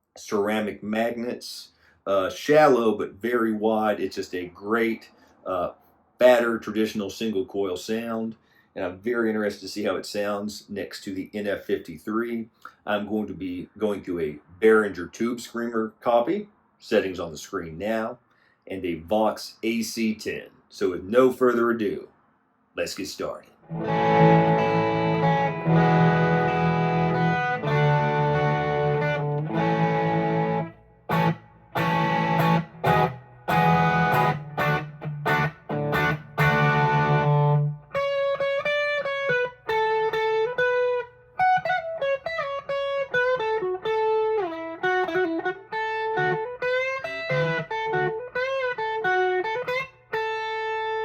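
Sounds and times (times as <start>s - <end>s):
overdriven electric guitar: 23.6s - 51.0s.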